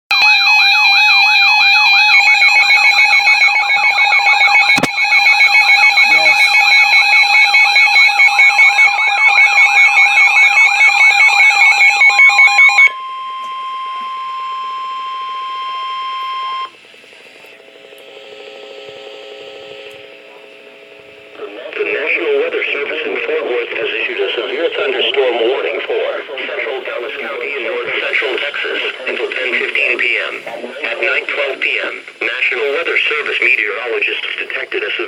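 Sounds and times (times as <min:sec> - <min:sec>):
steady attention tone: 0:00.1 - 0:35.0
electronic warble alert: 0:00.2 - 0:16.7
steady beeping tones: 0:00.2 - 0:16.7.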